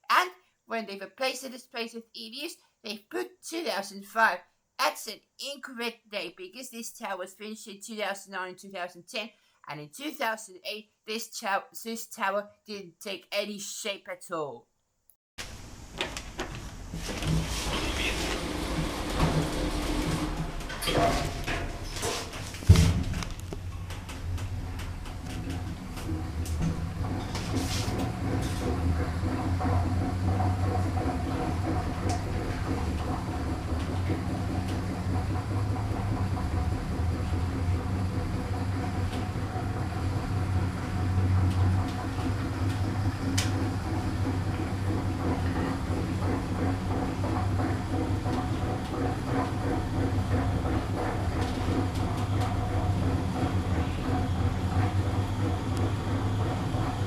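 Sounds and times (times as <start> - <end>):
lift rumble and hum: 15.5 - 57.0.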